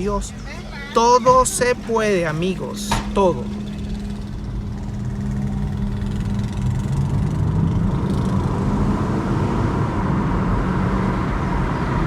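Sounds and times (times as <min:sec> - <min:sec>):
car engine running: 0:00.0 - 0:08.8.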